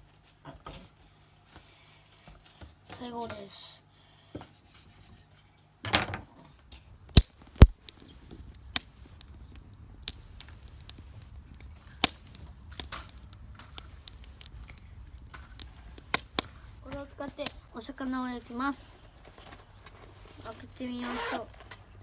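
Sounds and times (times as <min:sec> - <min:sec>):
low steady rumble: 0:06.7 - 0:19.2
campfire crackling and popping: 0:07.0 - 0:18.9.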